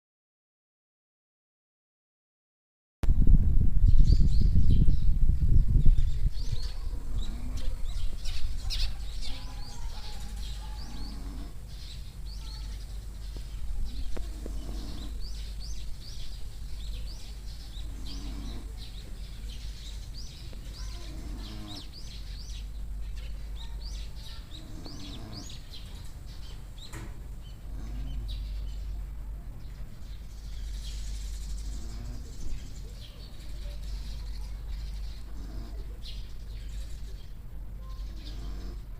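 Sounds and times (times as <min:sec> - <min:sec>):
small birds chirping: 0:03.9 - 0:38.9
pig snoring: 0:06.9 - 0:08.0, 0:10.8 - 0:11.6, 0:14.3 - 0:15.3, 0:17.8 - 0:18.8, 0:21.0 - 0:21.9, 0:24.6 - 0:25.6, 0:27.6 - 0:28.4, 0:31.6 - 0:32.4, 0:35.2 - 0:36.0, 0:38.2 - 0:38.9.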